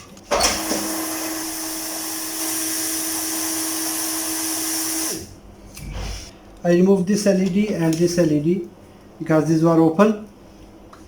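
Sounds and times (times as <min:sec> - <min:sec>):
heat gun blowing: 0:00.6 - 0:05.3.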